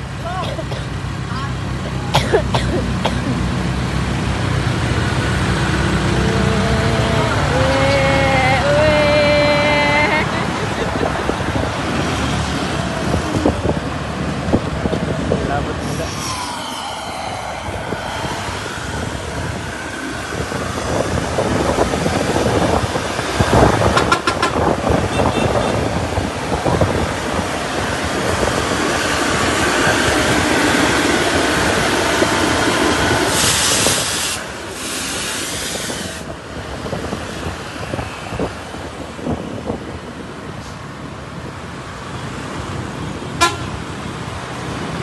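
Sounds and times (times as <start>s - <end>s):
large vehicles rumbling past: 0.0s - 45.0s
high hiss: 15.8s - 22.1s.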